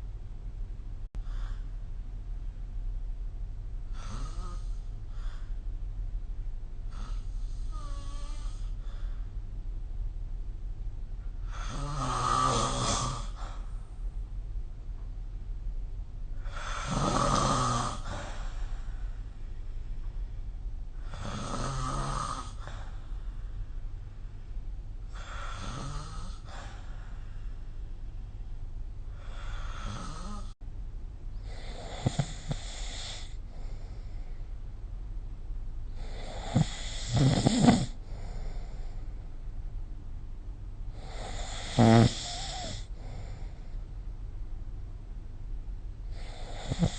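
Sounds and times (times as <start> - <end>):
steady low hum: 0.0 - 46.9
person snoring: 3.9 - 4.9, 11.4 - 13.7, 16.4 - 18.6, 21.0 - 22.9, 25.1 - 26.9, 29.2 - 30.6, 31.4 - 34.0, 35.9 - 38.8, 40.9 - 43.6, 46.1 - 46.9
soft breath out: 8.5 - 9.4.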